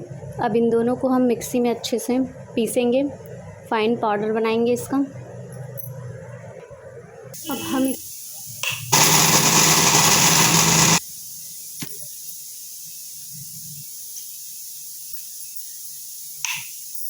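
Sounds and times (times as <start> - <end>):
mixer grinder grinding: 8.9 - 11.0.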